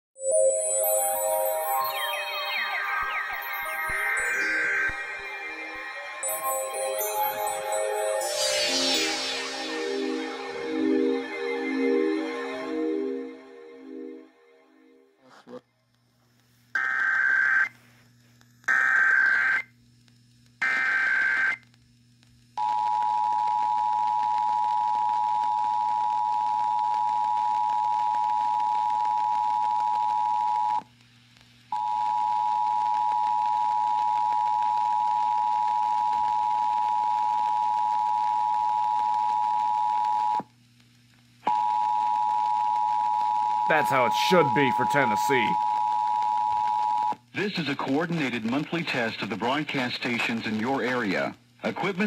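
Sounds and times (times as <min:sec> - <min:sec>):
digital data bursts: 0:00.2 - 0:12.3, 0:43.7 - 0:45.6
harsh two-tone alert signal: 0:00.2 - 0:12.5, 0:43.7 - 0:45.6.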